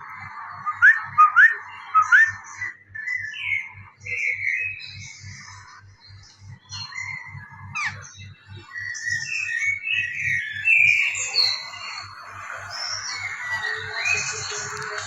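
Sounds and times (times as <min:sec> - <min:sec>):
parrots chirping and whistling: 0:00.7 - 0:02.4, 0:07.7 - 0:08.0, 0:12.6 - 0:14.9.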